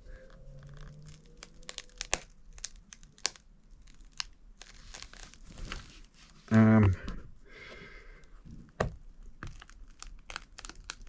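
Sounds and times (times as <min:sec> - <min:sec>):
glass crackling and snapping: 0:00.1 - 0:06.0, 0:09.2 - 0:11.0.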